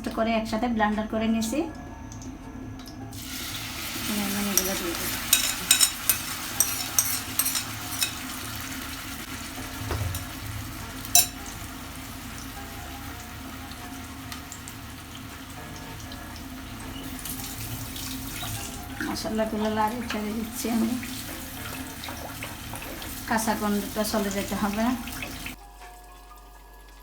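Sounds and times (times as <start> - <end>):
paste sizzling in a pan: 3.2 - 18.9.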